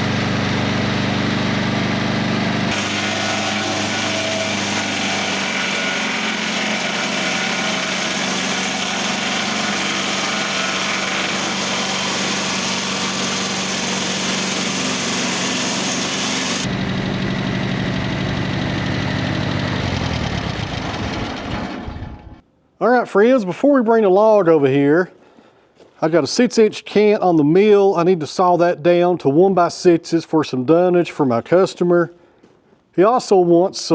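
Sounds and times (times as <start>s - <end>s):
sawmill engine running: 0.0s - 22.4s
saw cutting through log: 2.7s - 16.8s.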